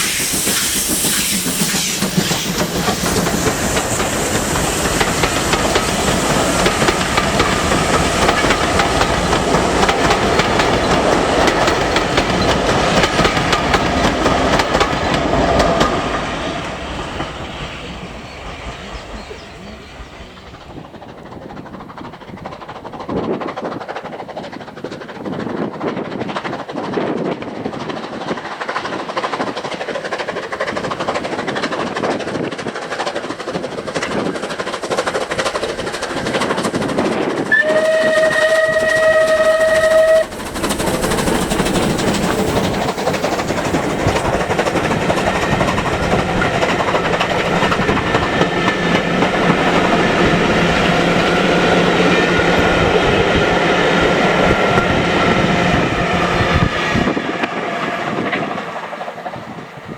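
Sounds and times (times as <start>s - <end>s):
steam train running: 0.0s - 59.9s
steam train whistle: 37.5s - 40.5s.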